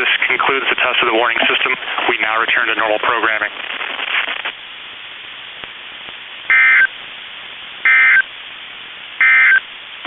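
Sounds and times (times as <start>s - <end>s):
radio static: 0.0s - 10.0s
digital data bursts: 6.5s - 6.9s, 7.9s - 8.2s, 9.2s - 9.6s.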